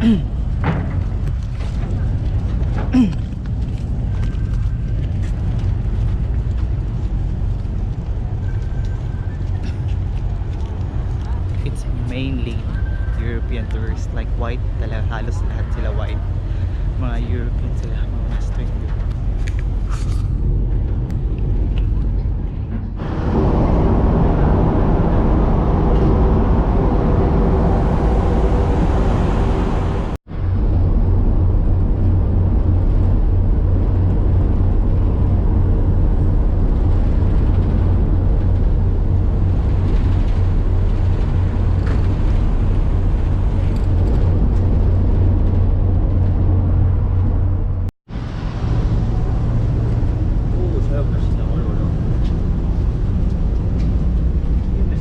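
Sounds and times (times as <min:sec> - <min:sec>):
water noise: 0:00.0 - 0:55.0
wind: 0:00.0 - 0:55.0
boat engine droning: 0:04.0 - 0:55.0.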